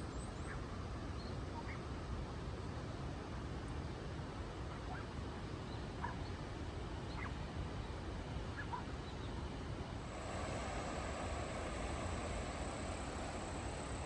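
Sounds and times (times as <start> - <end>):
outdoor background noise: 0.0 - 14.0
steady high-pitched tone: 10.0 - 14.0.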